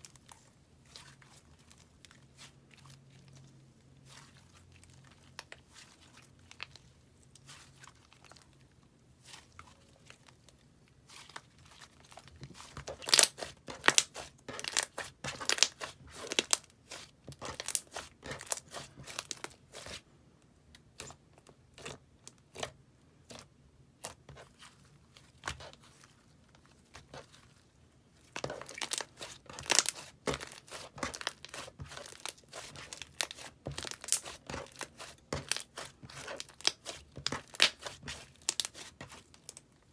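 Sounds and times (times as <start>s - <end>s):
slime crackling and popping: 12.6s - 16.6s, 17.3s - 19.6s, 28.4s - 39.6s.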